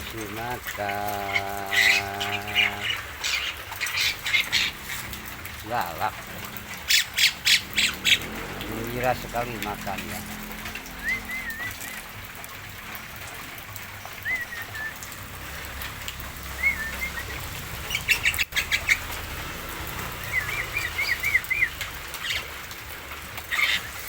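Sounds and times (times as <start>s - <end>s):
bird whistling calls: 11.0s - 12.1s, 14.2s - 15.2s, 16.5s - 19.0s, 20.2s - 22.5s.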